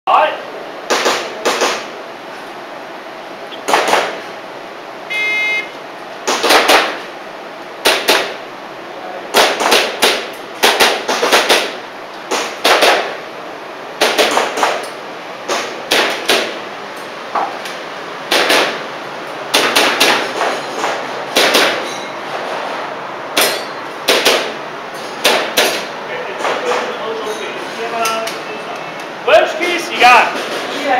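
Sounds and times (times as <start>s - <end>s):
airsoft pistol shots: 0.9s - 1.9s, 3.6s - 4.2s, 6.2s - 7.0s, 7.8s - 8.4s, 9.3s - 13.2s, 14.0s - 14.9s, 15.5s - 16.6s, 18.3s - 18.8s, 19.5s - 20.4s, 21.3s - 21.8s, 23.4s - 24.6s, 25.2s - 25.9s
shot timer beep: 5.1s - 5.8s.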